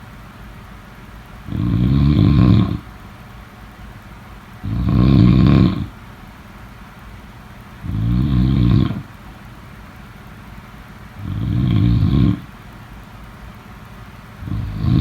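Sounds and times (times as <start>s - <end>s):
loud deep snoring: 1.5s - 2.9s, 4.6s - 6.0s, 7.8s - 9.1s, 11.2s - 12.5s, 14.4s - 15.0s.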